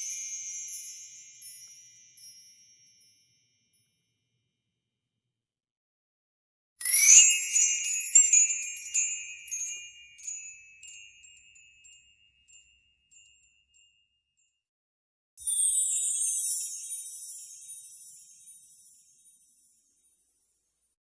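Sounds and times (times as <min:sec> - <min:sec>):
high wind chime strikes: 0:07.1 - 0:14.0, 0:15.4 - 0:20.5.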